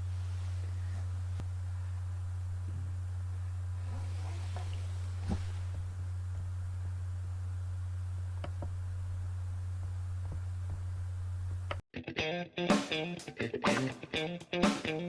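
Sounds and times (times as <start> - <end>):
steady low hum: 0.0 - 11.8
guitar music: 11.9 - 15.0.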